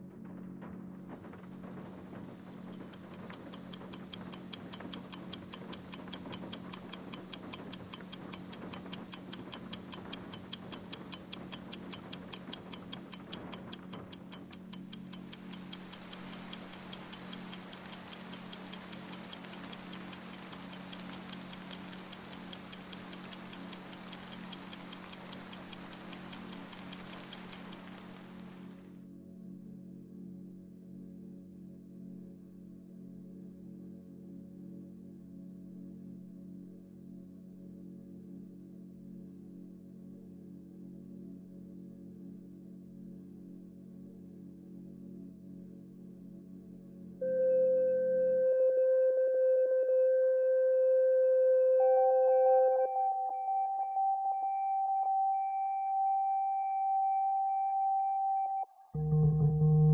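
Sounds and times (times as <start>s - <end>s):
clock ticking: 2.5s - 28.3s.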